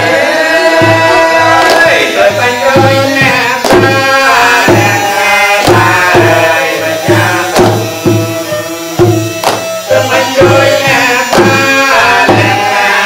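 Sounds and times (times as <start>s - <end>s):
hand drums beating: 0.0s - 12.8s
ornamented melody: 2.6s - 13.0s.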